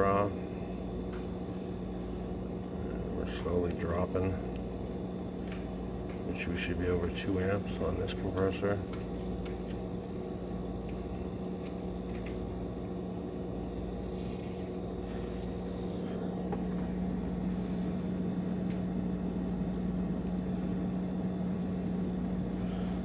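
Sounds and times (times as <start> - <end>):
refrigerator compressor humming: 0.0 - 23.0.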